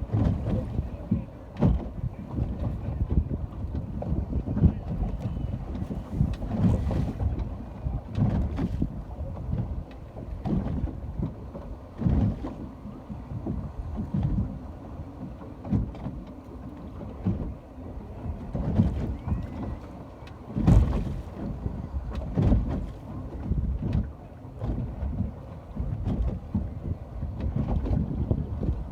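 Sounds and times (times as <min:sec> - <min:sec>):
sea water sloshing and lapping: 0:00.0 - 0:28.9
wind buffeting microphone: 0:00.0 - 0:28.9.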